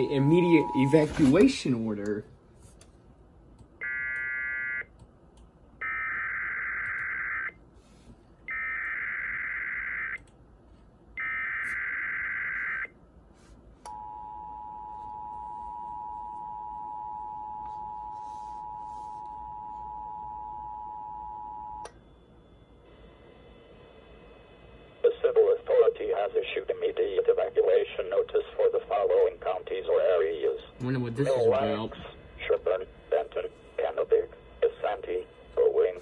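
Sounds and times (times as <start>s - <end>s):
two-tone attention signal: 0.0s - 1.1s.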